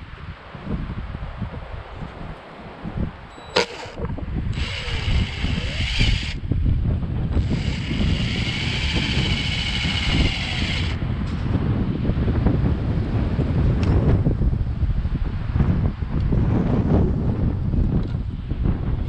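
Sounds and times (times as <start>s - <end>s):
wind rumbling on microphone: 0.0s - 19.0s
sharp click: 3.5s - 6.4s
power drill whirring: 3.5s - 6.5s, 7.3s - 11.0s.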